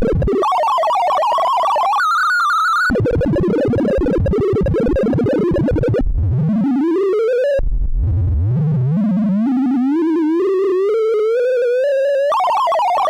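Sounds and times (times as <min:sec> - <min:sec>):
synthesized sorting tones: 0:02.9 - 0:06.0, 0:12.3 - 0:13.0.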